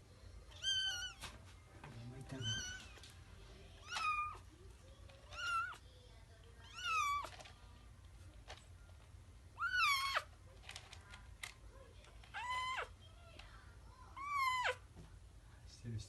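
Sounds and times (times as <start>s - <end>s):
kitten meowing: 0.5s - 1.2s, 2.4s - 3.0s, 3.8s - 4.4s, 5.3s - 5.8s, 6.6s - 7.3s, 9.6s - 10.3s, 12.4s - 12.9s, 14.2s - 14.8s.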